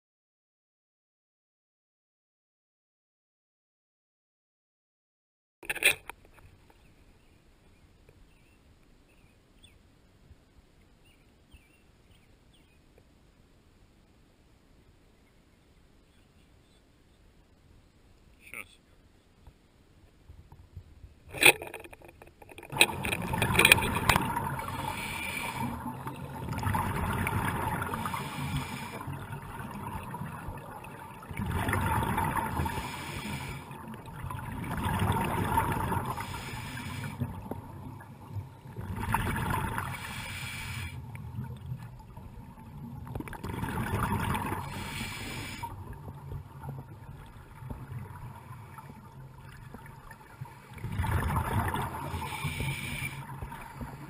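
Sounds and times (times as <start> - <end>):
regulator inhalations: 24.6 - 25.8, 28.0 - 29.1, 32.6 - 33.8, 36.2 - 37.3, 39.9 - 41.0, 44.6 - 45.8, 52.1 - 54.0
diver exhaling bubbles: 31.2 - 37.5, 43.1 - 45.9, 50.7 - 54.0.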